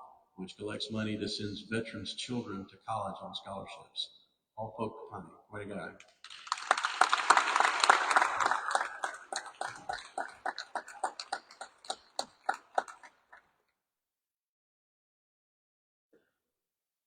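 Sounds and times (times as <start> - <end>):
audience applauding: 6.2 - 13.4.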